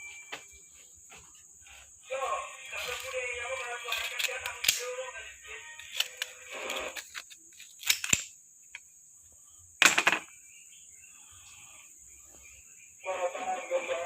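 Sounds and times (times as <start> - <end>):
metal parts and tools clinking: 2.8 - 4.9, 5.8 - 8.4.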